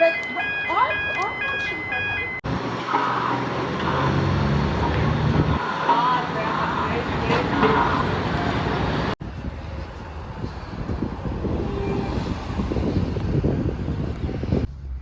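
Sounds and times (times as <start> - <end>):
vehicle rumble: 1.6 - 15.0
wind buffeting microphone: 9.2 - 15.0.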